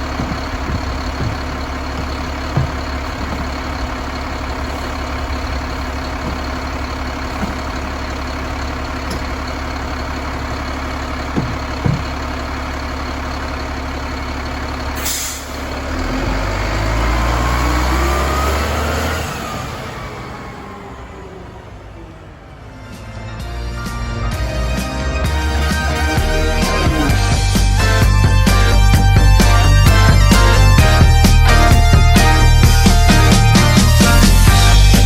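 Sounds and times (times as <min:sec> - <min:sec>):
garbage truck diesel engine idling: 0:00.0 - 0:35.0
air brake hiss: 0:15.0 - 0:15.6.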